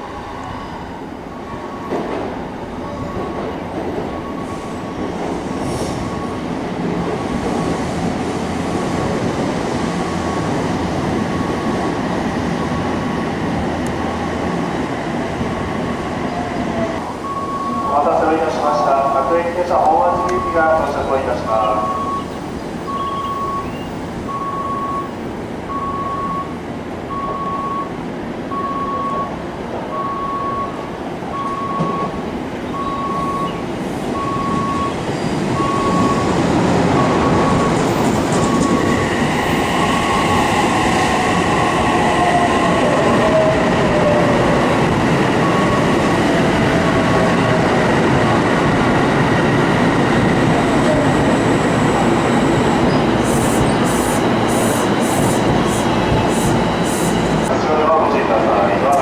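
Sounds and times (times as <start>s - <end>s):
train rumble: 0.0s - 59.0s
short beeps: 17.2s - 18.1s, 21.6s - 27.9s, 31.4s - 33.6s
train brakes squealing: 20.2s - 25.1s, 31.4s - 36.4s, 37.0s - 46.2s, 49.7s - 57.5s.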